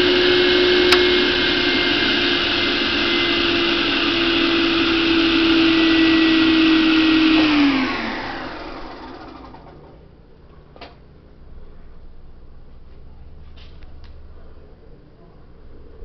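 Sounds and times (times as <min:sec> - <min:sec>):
table saw running and winding down: 0:00.0 - 0:09.9.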